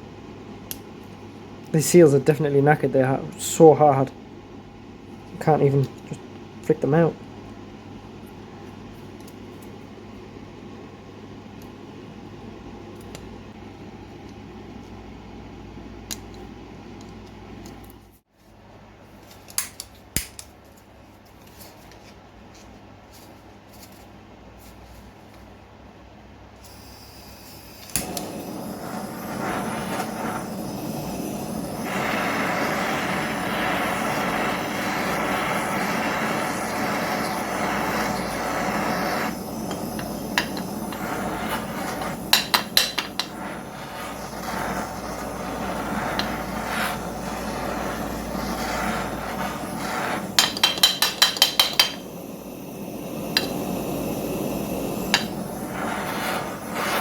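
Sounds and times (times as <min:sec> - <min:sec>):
blowtorch burning: 0:26.6 - 0:57.0
sharp metal taps: 0:50.4 - 0:52.0.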